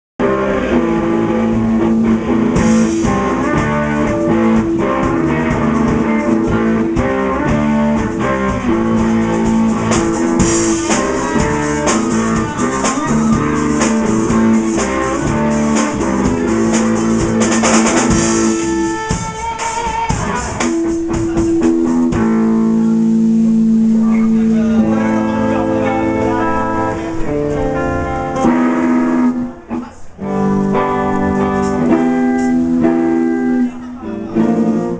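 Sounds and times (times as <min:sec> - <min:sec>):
rock band playing: 0:00.2 - 0:34.9.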